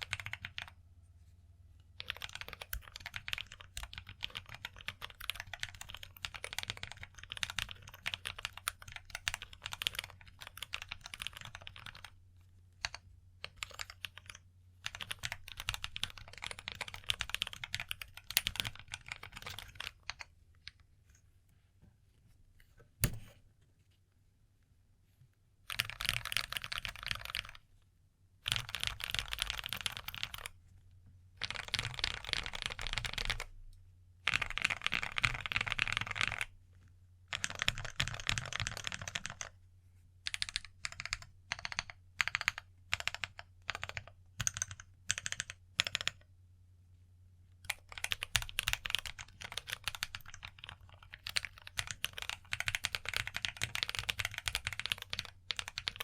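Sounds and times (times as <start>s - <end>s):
mechanical keyboard typing: 0.0s - 0.7s, 2.0s - 12.2s, 12.8s - 20.3s, 25.7s - 27.6s, 28.4s - 30.5s, 31.4s - 33.5s, 34.3s - 36.5s, 37.3s - 39.5s, 40.3s - 46.2s, 47.7s - 56.0s.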